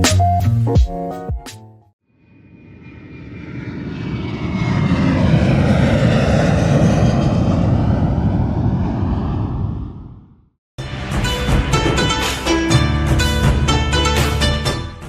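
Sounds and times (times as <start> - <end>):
faint falling whine: 2.1 - 10.5
aircraft engine rushing: 2.2 - 10.6.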